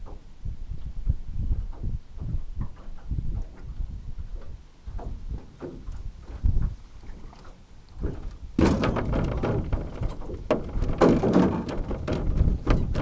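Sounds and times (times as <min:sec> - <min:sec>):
wind buffeting the microphone: 0:00.0 - 0:13.0
scattered knocks: 0:08.6 - 0:13.0.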